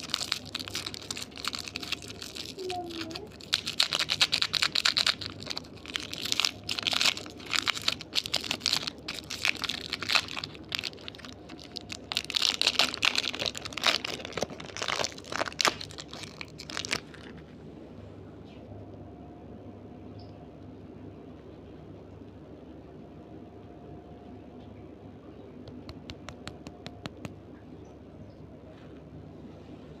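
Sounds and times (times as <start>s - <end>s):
candy wrapper crinkling: 0.0s - 17.6s.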